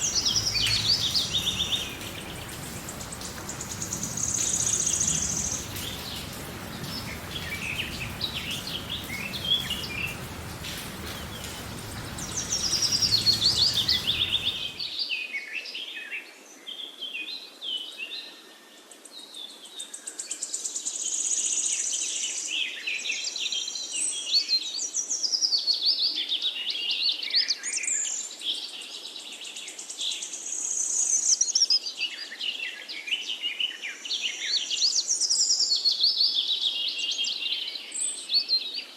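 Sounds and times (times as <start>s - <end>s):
birds chirping and singing: 0.0s - 14.8s.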